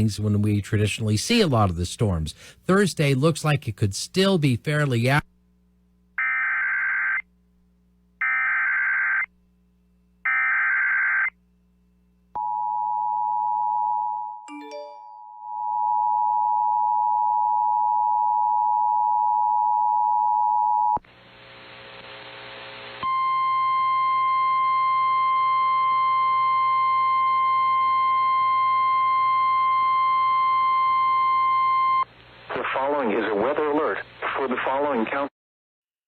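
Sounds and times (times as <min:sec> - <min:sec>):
screechy data tones: 0:06.2 - 0:07.2, 0:08.2 - 0:09.3, 0:10.3 - 0:11.4
burst of static: 0:21.0 - 0:23.0, 0:32.3 - 0:35.3.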